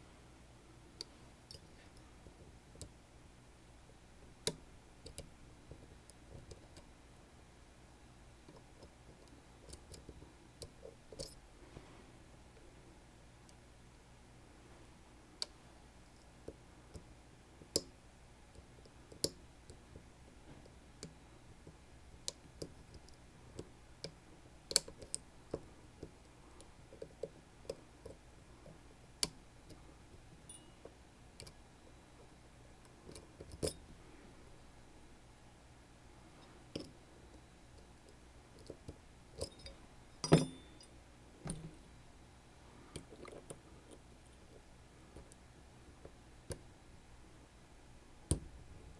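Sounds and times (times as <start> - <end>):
lock picking tools clicking: 39.4 - 40.9.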